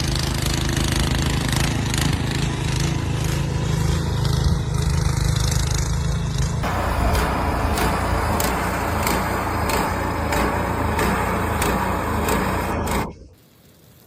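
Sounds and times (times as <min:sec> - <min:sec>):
motor running steadily: 0:00.0 - 0:13.3
loud rushing noise: 0:06.6 - 0:13.3.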